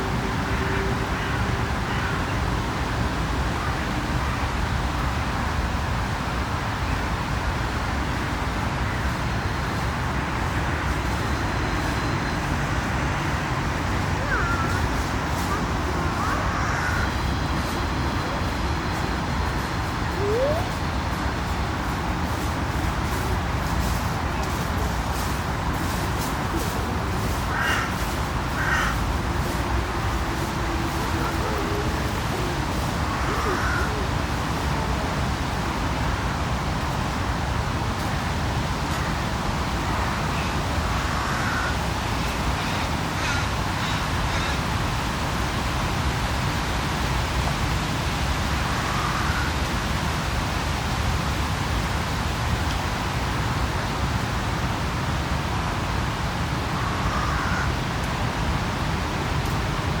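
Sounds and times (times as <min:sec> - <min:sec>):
constant hiss: 0:00.0 - 1:00.0
distant city traffic rumble: 0:00.0 - 1:00.0
crow cawing: 0:14.2 - 0:17.2, 0:27.5 - 0:30.1, 0:30.7 - 0:34.1, 0:40.9 - 0:41.8, 0:42.6 - 0:44.6, 0:56.8 - 0:57.8.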